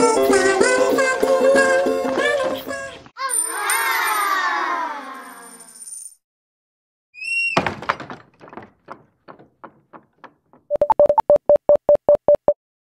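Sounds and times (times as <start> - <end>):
echoing knocks: 7.6 - 10.7
clicking beeps: 10.7 - 12.6.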